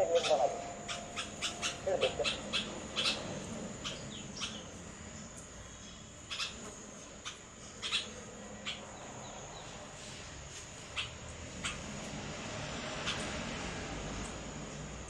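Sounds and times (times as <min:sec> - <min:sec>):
faint high-pitched tone: 0:00.0 - 0:02.5.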